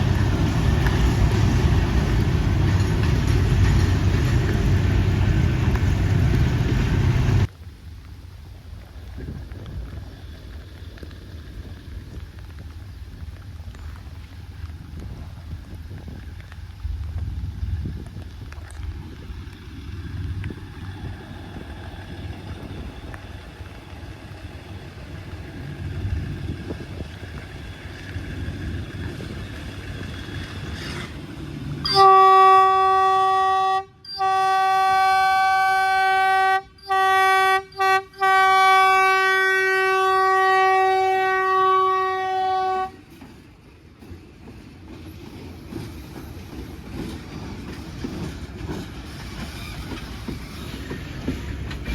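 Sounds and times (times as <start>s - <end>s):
diesel locomotive rumble: 0.0s - 51.9s
locomotive horn blasts: 31.8s - 43.0s.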